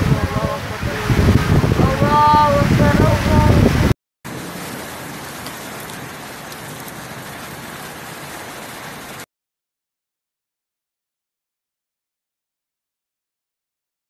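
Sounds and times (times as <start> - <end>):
person speaking: 0.0 - 3.7
wind buffeting microphone: 0.0 - 4.0.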